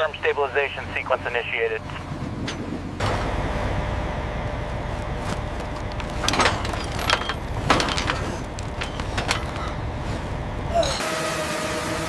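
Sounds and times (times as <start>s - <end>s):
low mechanical rumble: 0.0s - 11.0s
metallic clanks and knocks: 5.3s - 10.3s.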